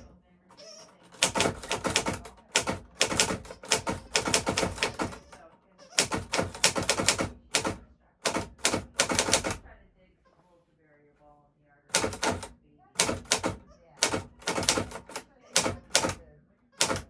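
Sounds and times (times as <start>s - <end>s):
typewriter keys clacking: 0.9s - 5.4s, 6.0s - 9.6s, 11.9s - 16.2s, 16.8s - 17.0s.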